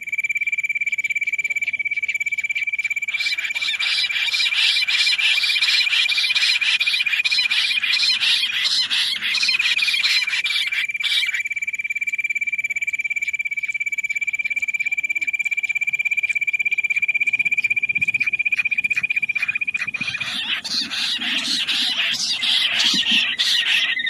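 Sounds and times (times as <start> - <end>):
quail high pulsing trill: 1.3 - 11.6, 13.2 - 24.0
quail rapid chirping calls: 2.5 - 11.4, 17.3 - 24.0.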